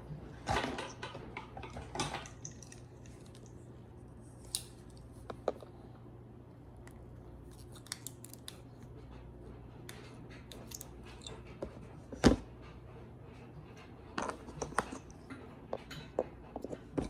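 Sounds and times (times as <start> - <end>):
low steady hum: 0.0 - 17.0
small clicks and snips: 7.5 - 8.7.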